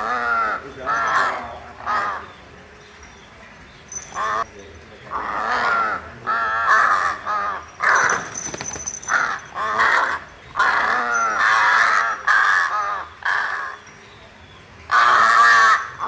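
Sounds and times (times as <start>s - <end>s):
crow cawing: 5.1s - 8.0s, 14.9s - 16.0s.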